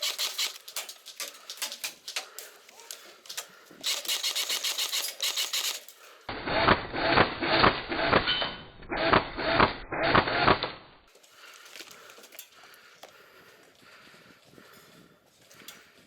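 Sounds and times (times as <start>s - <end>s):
airsoft gun bursts: 0.0s - 0.8s, 3.8s - 5.9s
faint clicks and rustling: 0.0s - 6.2s.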